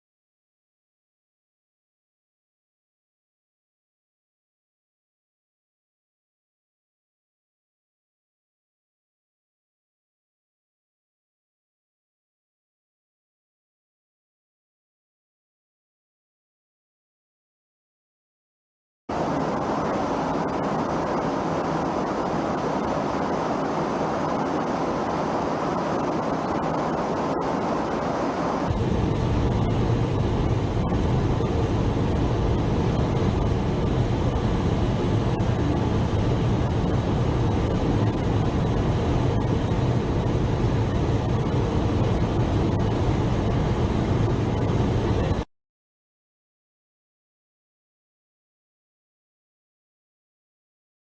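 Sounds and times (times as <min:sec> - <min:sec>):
jet engine rushing: 0:19.1 - 0:45.5.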